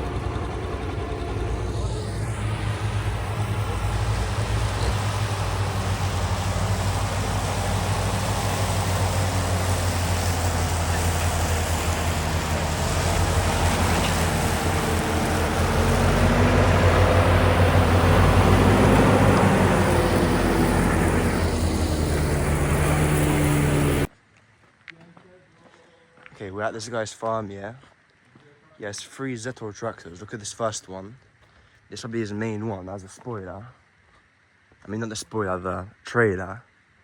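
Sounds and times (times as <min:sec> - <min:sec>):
engine humming: 0:00.0 - 0:24.1.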